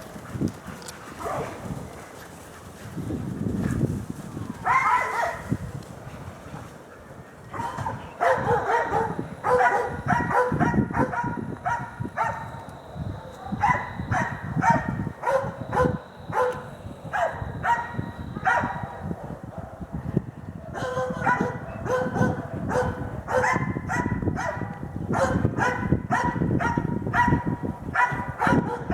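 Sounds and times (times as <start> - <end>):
dogs baying and barking: 0.0 - 28.9.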